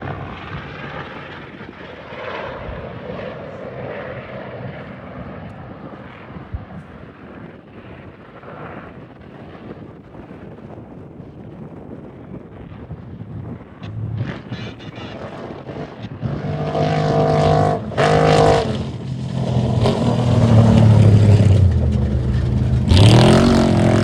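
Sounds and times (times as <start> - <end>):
vehicle engine running hard: 13.8 - 24.0.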